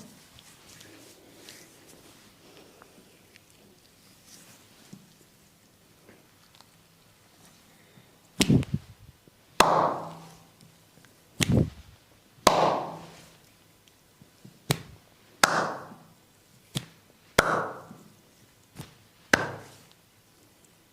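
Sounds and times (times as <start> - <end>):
hands slapping a body: 8.4 - 8.8, 9.6 - 10.4, 11.4 - 11.8, 12.4 - 13.3, 14.6 - 16.1, 16.7 - 18.0, 18.8 - 20.0.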